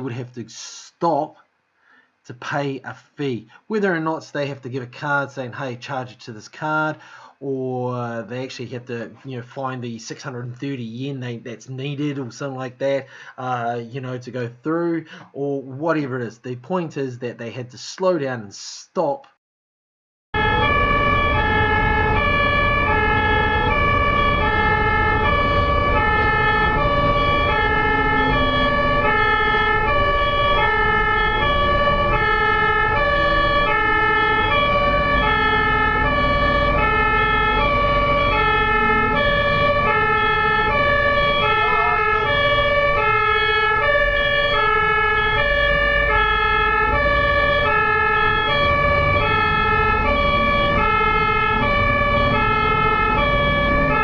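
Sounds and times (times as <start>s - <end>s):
ambulance two-tone siren: 20.4s - 54.0s
traffic rumble: 20.4s - 54.0s.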